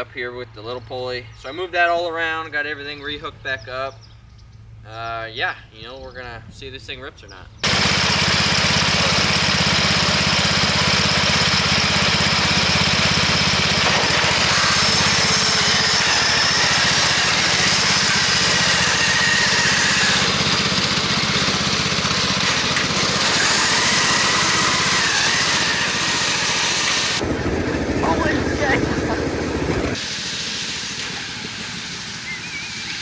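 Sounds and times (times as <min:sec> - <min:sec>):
lawn mower engine running: 0:07.6 - 0:33.0.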